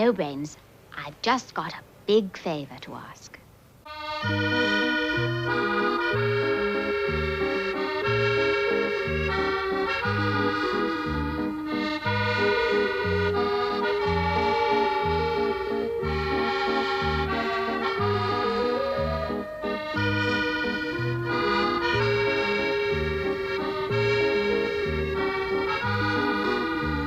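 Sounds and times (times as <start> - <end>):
accordion music: 3.9 - 27.0.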